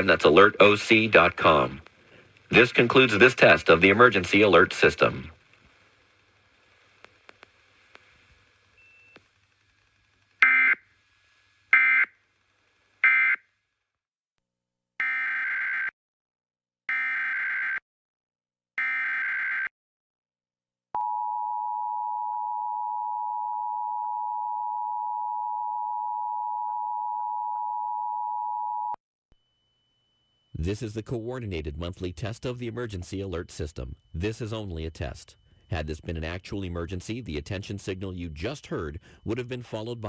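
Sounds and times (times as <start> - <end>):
longer digital data bursts: 2.5 - 5.4.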